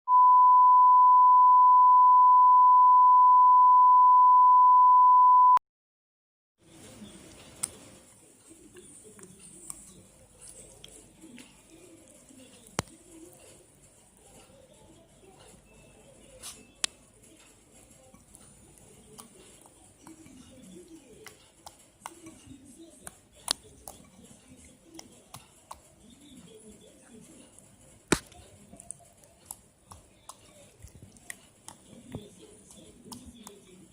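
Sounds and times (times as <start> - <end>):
steady electronic beep: 0.1 - 5.6.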